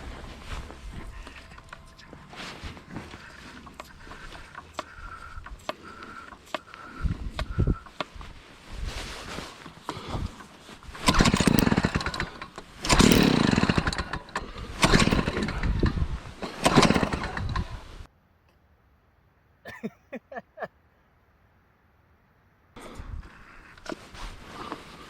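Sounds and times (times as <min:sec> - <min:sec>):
ice auger engine pull-starting: 0:00.0 - 0:08.4, 0:09.1 - 0:18.1, 0:22.8 - 0:25.0.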